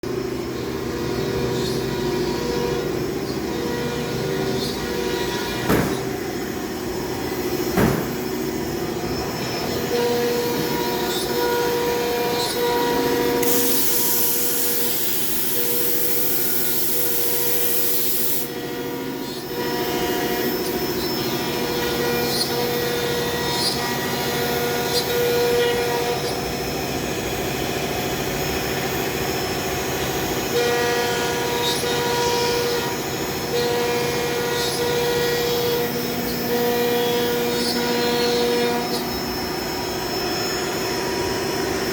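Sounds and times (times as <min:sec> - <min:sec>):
cnc machine whining: 0:00.1 - 0:41.9
sharp knock: 0:05.7 - 0:06.1, 0:07.8 - 0:08.2
loud hiss: 0:13.4 - 0:18.5.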